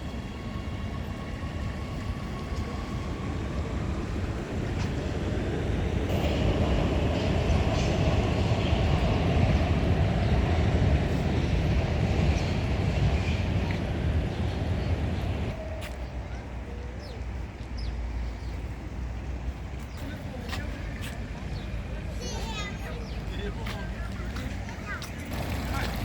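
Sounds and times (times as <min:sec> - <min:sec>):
vehicle passing by: 0:25.2 - 0:26.0.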